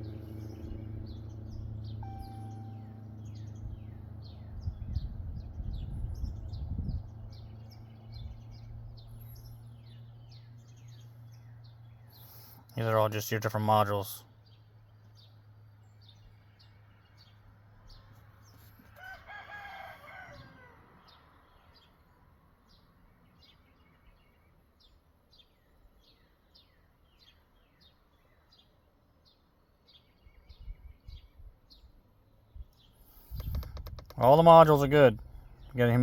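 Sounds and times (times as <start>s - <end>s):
small birds chirping: 0.0s - 36.0s
rooster crowing: 18.9s - 21.2s
low bumps: 33.1s - 36.0s.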